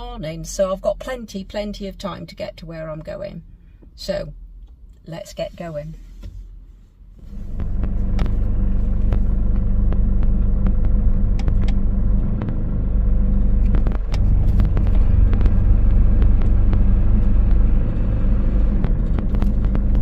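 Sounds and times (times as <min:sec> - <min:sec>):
van engine rumbling: 0:00.0 - 0:20.0
clicks inside cab: 0:07.6 - 0:18.1.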